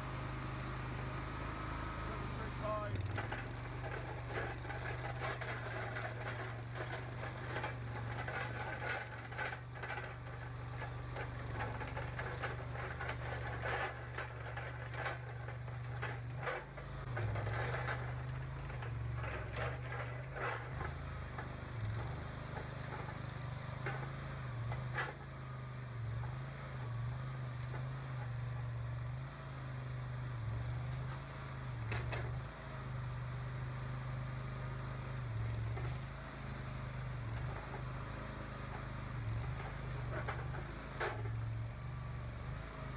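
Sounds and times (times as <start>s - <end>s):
skid steer engine running: 0.0s - 42.9s
clanks and rattles: 2.4s - 25.4s, 30.5s - 32.5s, 37.2s - 42.9s.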